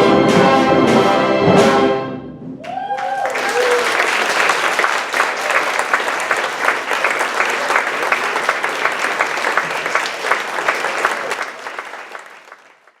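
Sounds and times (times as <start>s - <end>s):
audience applauding: 2.6s - 13.0s.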